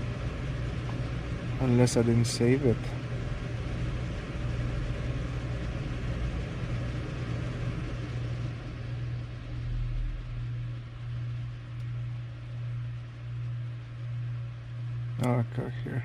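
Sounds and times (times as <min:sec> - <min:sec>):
low mechanical hum: 0:00.0 - 0:16.0.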